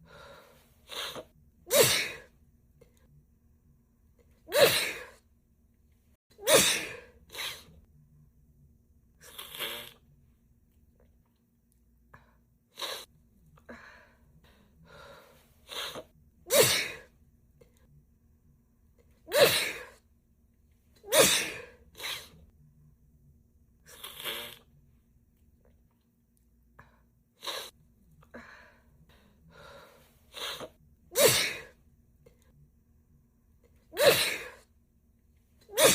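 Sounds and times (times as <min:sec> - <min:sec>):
soft in-breaths: 0:00.0 - 0:01.3, 0:13.6 - 0:16.1, 0:26.8 - 0:30.7
woman sneezing: 0:00.9 - 0:02.3, 0:04.5 - 0:05.2, 0:06.4 - 0:07.7, 0:19.3 - 0:20.0, 0:21.0 - 0:22.4, 0:30.4 - 0:31.7, 0:34.0 - 0:34.6, 0:35.7 - 0:35.9.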